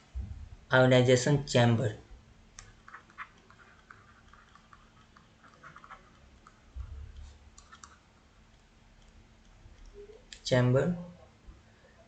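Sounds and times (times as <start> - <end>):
pen writing clicks and taps: 2.8 - 6.6.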